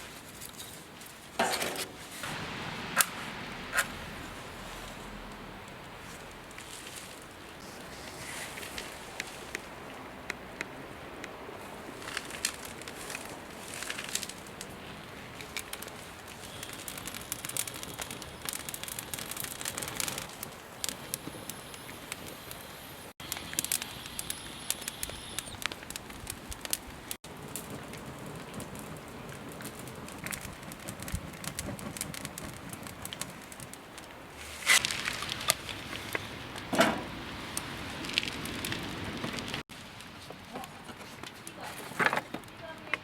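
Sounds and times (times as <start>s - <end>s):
steady hiss: 0.0s - 32.8s
campfire crackling and popping: 0.1s - 43.0s.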